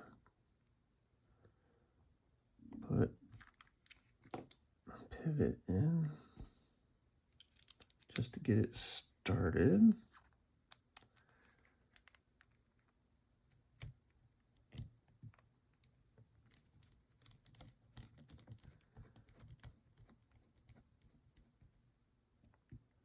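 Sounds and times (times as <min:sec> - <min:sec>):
small metal clicks and ticks: 0:11.9 - 0:12.2.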